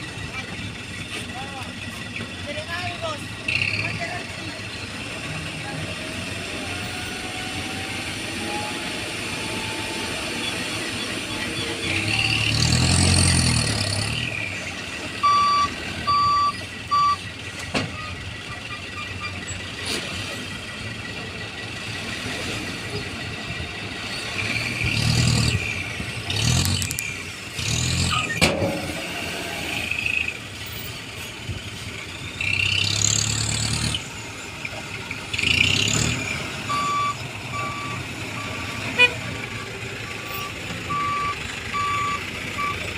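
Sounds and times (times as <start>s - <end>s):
dump truck engines running: 0.0s - 42.9s
reversing alarm beeping: 15.2s - 17.2s, 36.6s - 38.8s, 40.1s - 42.9s.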